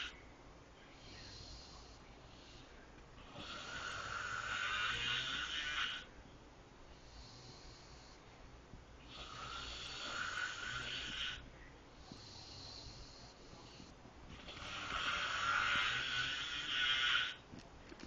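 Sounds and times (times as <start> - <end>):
snoring: 1.0 - 6.1, 7.0 - 8.2, 9.0 - 11.4, 12.0 - 17.4.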